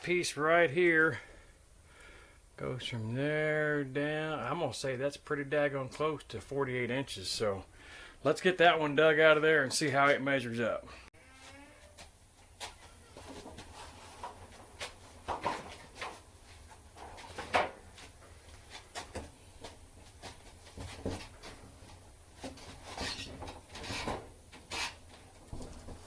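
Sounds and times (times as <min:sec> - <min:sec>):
wood scraping and knocking: 0:13.2 - 0:16.2.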